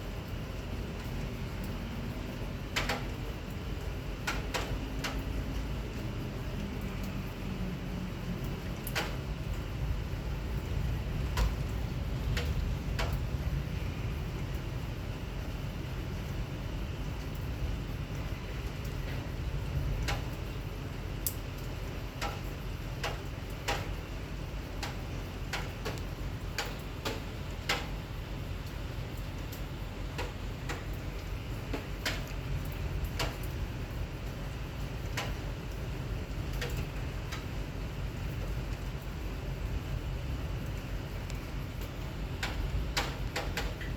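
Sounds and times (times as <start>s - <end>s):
heavy rain: 0.0s - 43.9s
sharp ticks: 23.0s - 23.9s, 24.8s - 27.9s.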